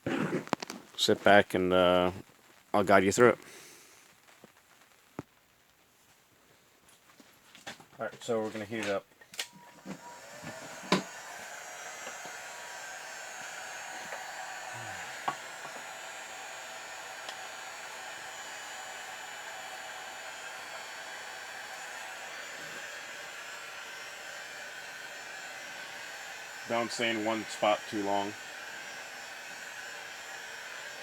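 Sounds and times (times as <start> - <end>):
hot-air blower running: 9.4 - 31.0.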